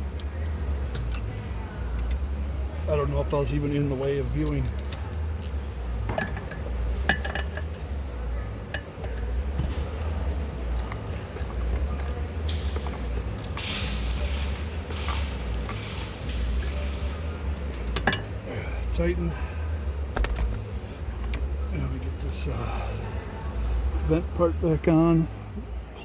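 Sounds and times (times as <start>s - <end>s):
metal tools clinking: 0.0s - 2.6s.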